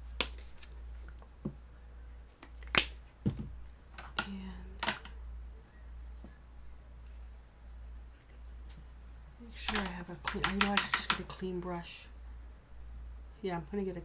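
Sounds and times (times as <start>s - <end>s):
small objects clicking on table: 9.7s - 11.4s.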